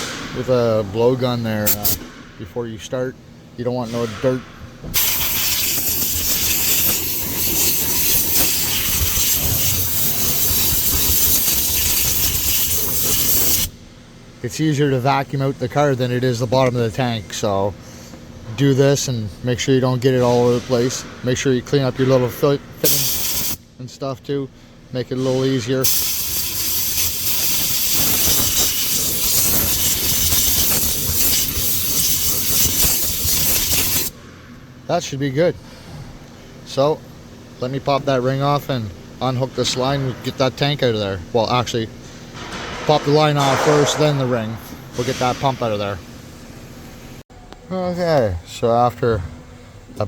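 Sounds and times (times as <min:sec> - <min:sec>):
compressed air blowgun blowing: 0:04.9 - 0:13.7, 0:22.8 - 0:23.6, 0:25.8 - 0:34.2.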